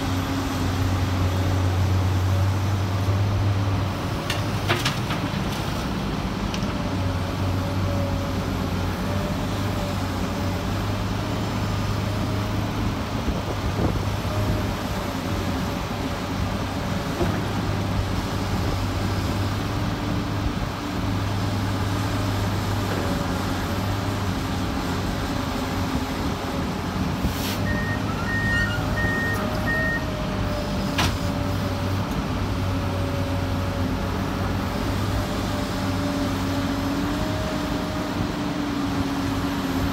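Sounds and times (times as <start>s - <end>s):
excavator diesel engine running: 0.0s - 39.9s
back-up alarm beeping: 27.7s - 30.1s.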